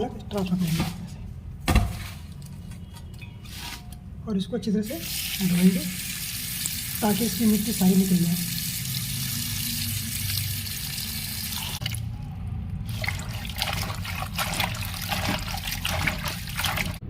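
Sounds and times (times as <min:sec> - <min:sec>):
tap water running into pot: 0:05.0 - 0:12.0, 0:12.9 - 0:17.0.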